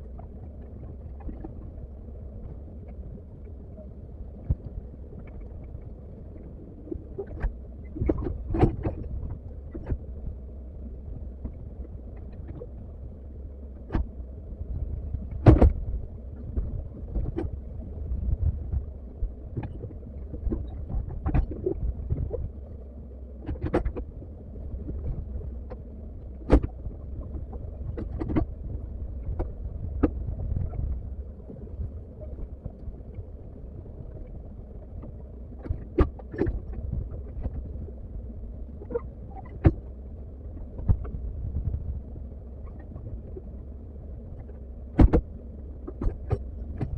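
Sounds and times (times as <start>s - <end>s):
excavator engine rumble: 0.0s - 46.9s.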